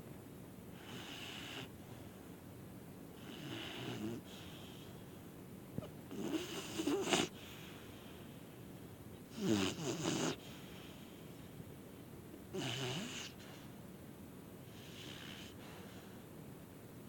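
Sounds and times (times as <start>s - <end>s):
dog snoring: 0.7s - 1.8s, 3.2s - 5.0s, 5.8s - 8.2s, 9.3s - 11.2s, 12.5s - 13.8s, 14.6s - 16.2s.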